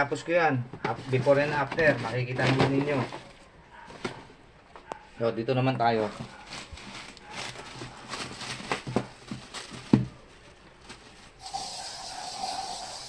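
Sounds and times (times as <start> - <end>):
shoes knocking and rustling: 5.9 - 11.2
steady hum with hiss: 8.1 - 13.0.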